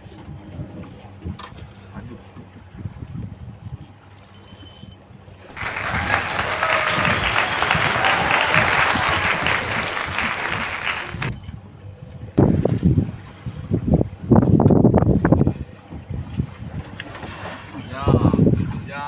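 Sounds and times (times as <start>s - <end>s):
crowd applause: 5.5s - 11.4s
low wind rumble: 5.5s - 17.0s.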